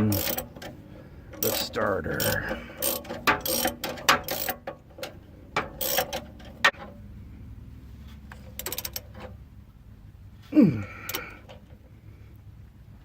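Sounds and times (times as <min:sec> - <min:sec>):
socket ratchet clicking: 0:00.0 - 0:00.7, 0:01.4 - 0:04.7, 0:05.6 - 0:06.8.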